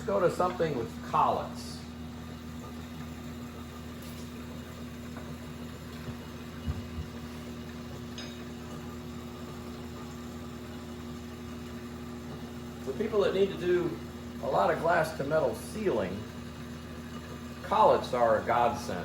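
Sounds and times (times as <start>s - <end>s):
shop machinery humming: 0.0s - 19.0s.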